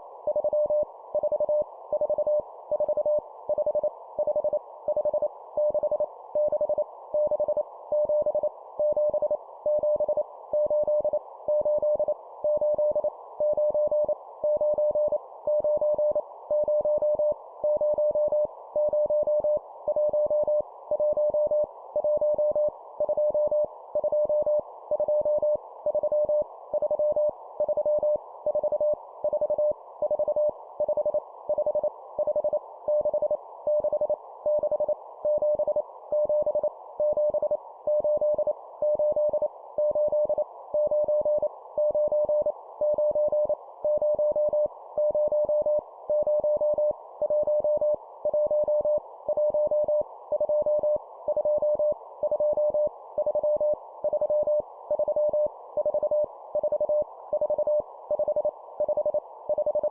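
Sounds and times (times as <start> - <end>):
morse code beeps: 0.3 - 59.9.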